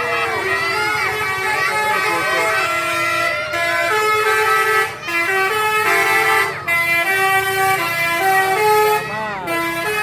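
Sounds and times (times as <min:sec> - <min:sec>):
musical bus horn playing tune: 0:00.0 - 0:10.0.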